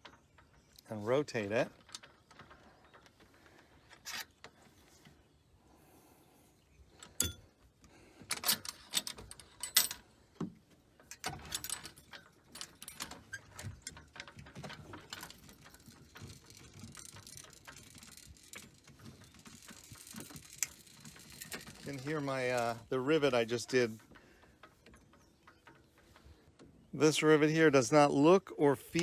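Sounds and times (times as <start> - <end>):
small clicks and rattling: 0.0 - 5.4, 6.9 - 27.5
metal clinks and knocks: 7.0 - 7.6, 8.3 - 26.4.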